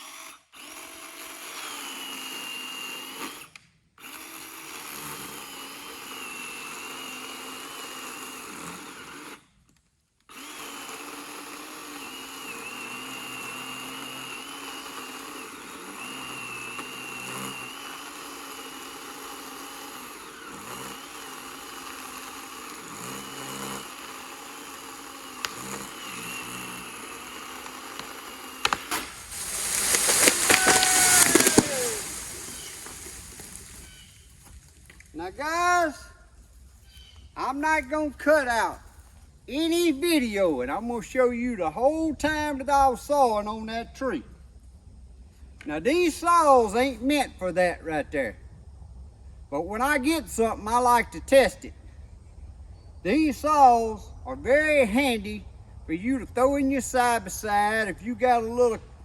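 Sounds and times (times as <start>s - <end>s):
electric chainsaw cutting wood: 0.0s - 9.5s, 10.2s - 35.1s.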